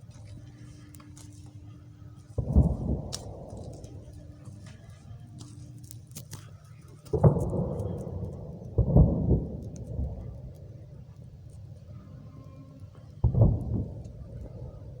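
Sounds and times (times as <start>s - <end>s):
distant explosion booms: 2.4s - 5.0s, 7.1s - 11.4s, 13.2s - 15.0s.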